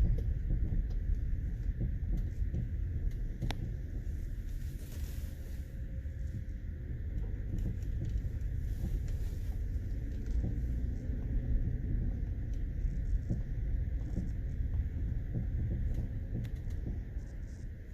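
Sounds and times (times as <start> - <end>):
road rumble: 0.0 - 17.9.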